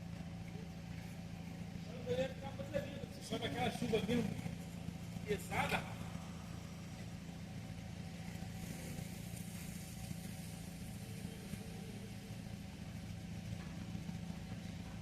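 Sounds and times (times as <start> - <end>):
car engine humming: 0.0 - 15.0.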